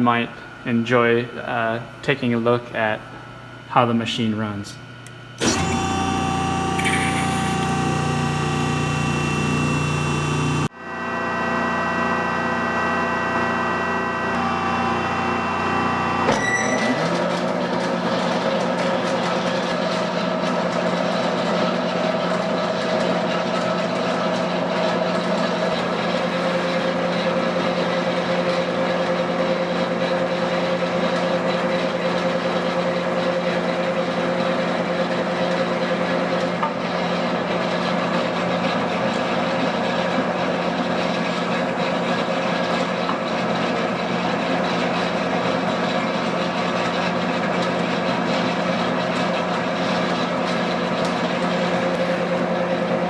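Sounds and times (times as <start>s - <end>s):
bandsaw mechanical hum: 4.7s - 18.0s.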